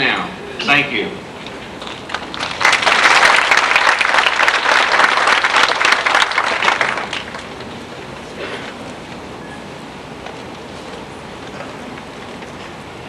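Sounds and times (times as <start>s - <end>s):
audience applause: 1.8s - 8.0s.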